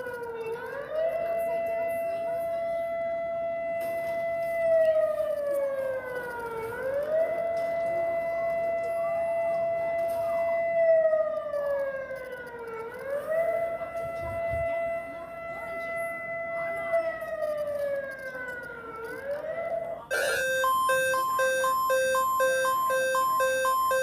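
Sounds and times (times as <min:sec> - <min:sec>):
siren-style alarm tone: 0:20.1 - 0:24.0.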